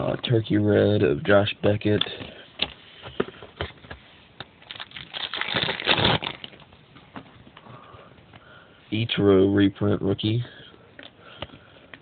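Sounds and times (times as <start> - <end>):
cards clicking and crinkling: 4.6 - 6.7
cards rustling: 4.6 - 6.7.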